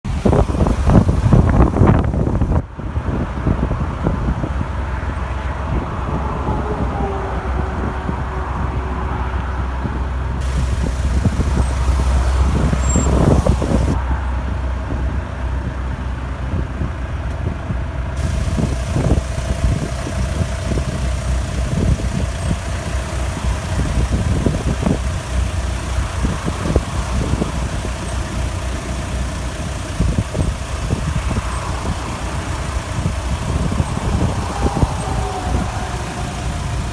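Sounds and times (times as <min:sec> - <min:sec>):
diesel engine idling: 0:00.0 - 0:36.9
thin squeal: 0:11.6 - 0:14.0.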